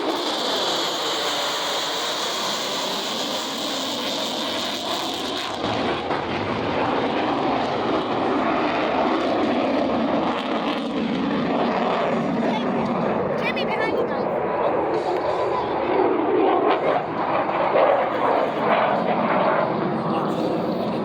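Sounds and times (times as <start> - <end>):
high whine: 0.0 - 9.9
jet engine roar: 0.0 - 21.0.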